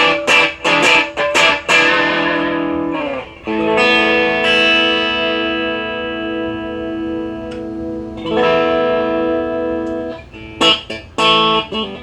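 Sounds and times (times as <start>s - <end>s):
overdriven electric guitar chords: 0.0s - 12.0s.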